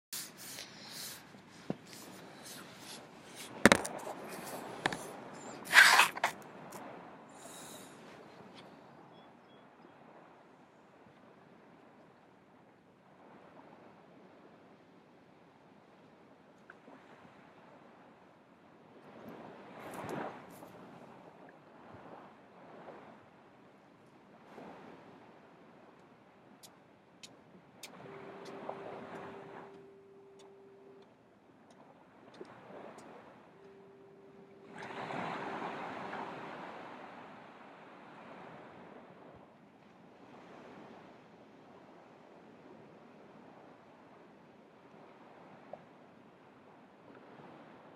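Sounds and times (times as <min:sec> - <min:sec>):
hiss of surf: 0:00.1 - 0:08.8, 0:27.8 - 0:31.0, 0:32.6 - 0:37.4
hands rubbing on microphone: 0:00.2 - 0:06.4
ocean surf: 0:00.2 - 0:12.0, 0:13.0 - 0:14.9, 0:18.9 - 0:31.1, 0:31.7 - 0:44.2.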